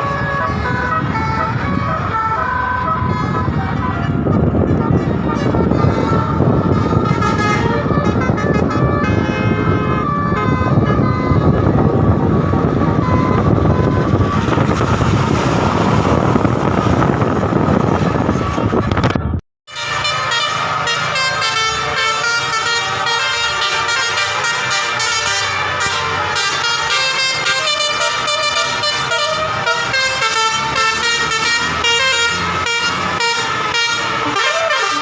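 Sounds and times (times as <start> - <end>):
bus horn melody: 0.0 - 16.1, 19.7 - 35.0
loud low rumble: 0.0 - 19.4.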